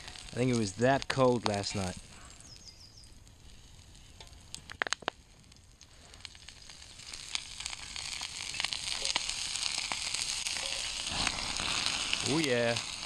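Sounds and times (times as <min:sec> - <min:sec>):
sausage slices sizzling in oil: 0:05.9 - 0:13.0.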